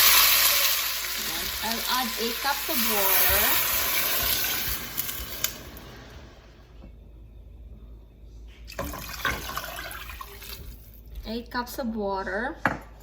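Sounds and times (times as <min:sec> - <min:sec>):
sizzling in a hot pot: 0:00.0 - 0:06.6.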